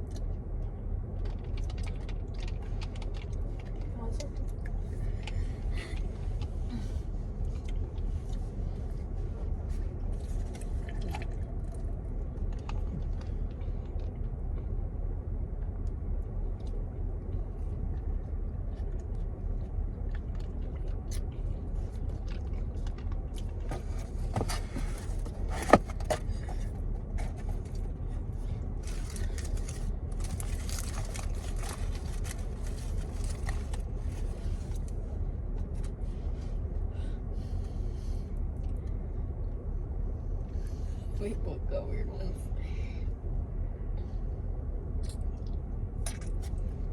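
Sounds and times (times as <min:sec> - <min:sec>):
low cabin rumble: 0:00.0 - 0:46.9
chewing: 0:01.2 - 0:06.6, 0:09.7 - 0:14.7, 0:18.7 - 0:35.0
food packaging rustling: 0:23.6 - 0:27.8, 0:28.8 - 0:34.9.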